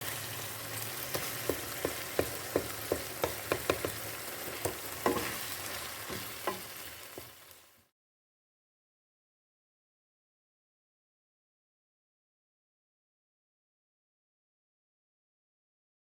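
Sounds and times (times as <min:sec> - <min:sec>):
food sizzling in hot oil: 0:00.0 - 0:07.9.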